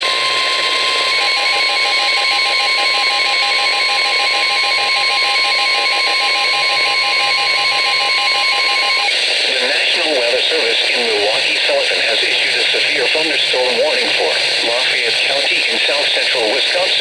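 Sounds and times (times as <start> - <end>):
steady alarm tone: 0.0 - 10.2
radio hiss: 9.1 - 17.0.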